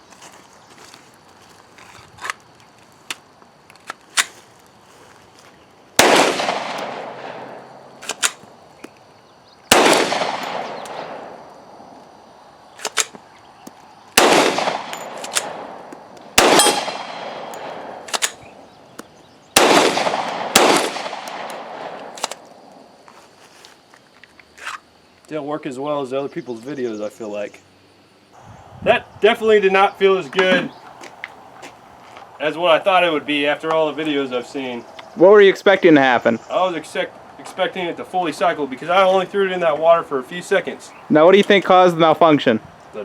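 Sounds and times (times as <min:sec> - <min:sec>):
pistol shots echoing: 0:06.0 - 0:08.4, 0:09.7 - 0:11.4, 0:14.2 - 0:18.6, 0:19.6 - 0:22.4
metallic pistol clicks: 0:14.6 - 0:19.1, 0:20.0 - 0:22.5.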